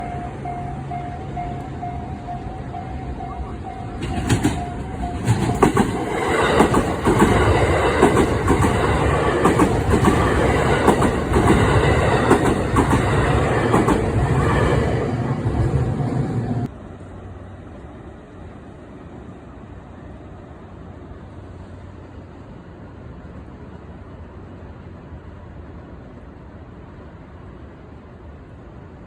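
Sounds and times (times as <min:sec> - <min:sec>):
train wheels clattering over rail joints: 0:04.0 - 0:14.6.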